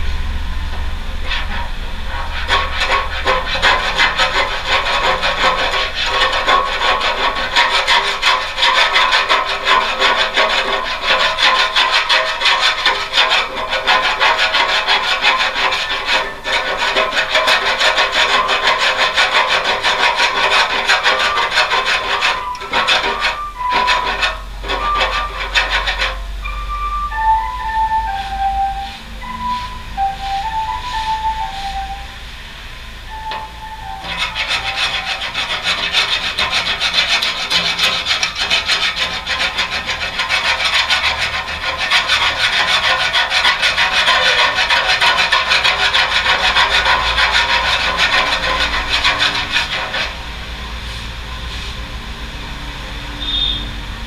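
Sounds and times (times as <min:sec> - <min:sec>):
hand scraper rasping on car panel: 0:02.1 - 0:26.2, 0:33.2 - 0:50.2.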